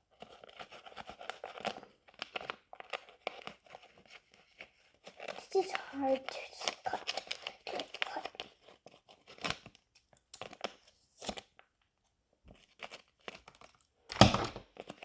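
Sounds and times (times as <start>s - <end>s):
scissors cutting plastic: 5.2s - 8.6s.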